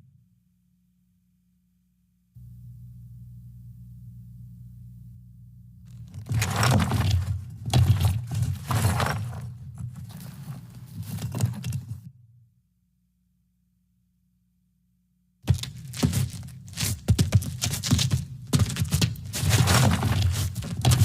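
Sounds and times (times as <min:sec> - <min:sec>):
low steady hum: 0:00.0 - 0:17.1
footsteps on stone and gravel: 0:15.5 - 0:21.0.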